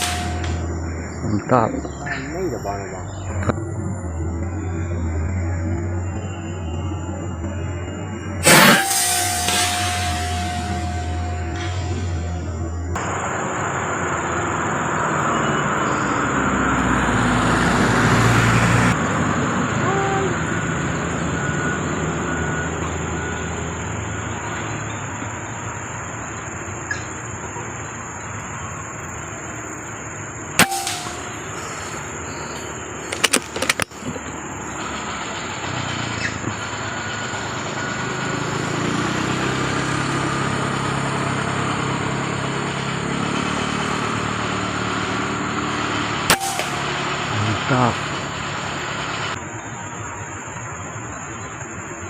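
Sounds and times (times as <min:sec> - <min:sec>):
sharp crack: 0:00.0 - 0:00.7, 0:08.4 - 0:12.2, 0:30.6 - 0:34.2, 0:46.3 - 0:47.3
high-pitched buzz: 0:00.0 - 0:13.0, 0:30.6 - 0:32.6.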